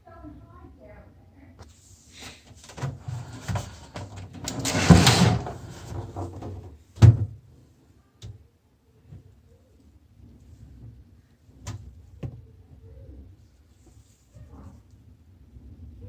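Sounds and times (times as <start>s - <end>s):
clattering of things handled: 2.5s - 7.3s.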